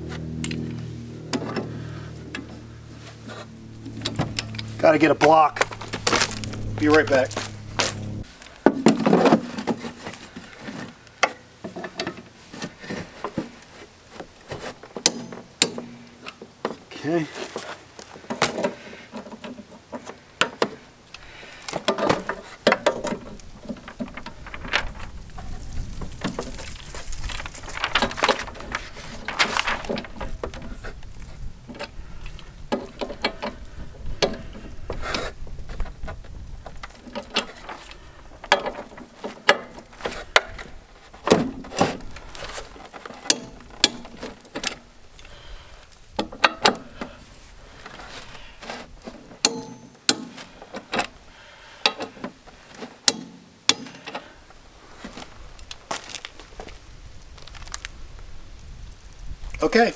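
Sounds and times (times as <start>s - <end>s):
metal clanks and knocks: 3.6s - 9.8s.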